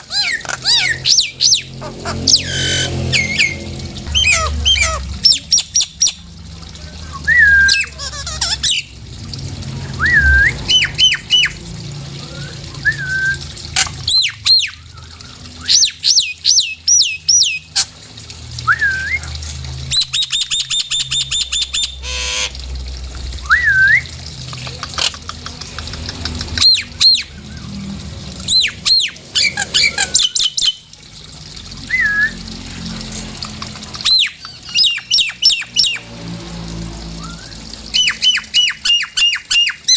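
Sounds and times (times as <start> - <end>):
bird harsh squawk: 0.0 - 6.2, 10.0 - 11.6
myna whistling calls: 2.3 - 6.2, 28.5 - 30.8, 34.0 - 36.0.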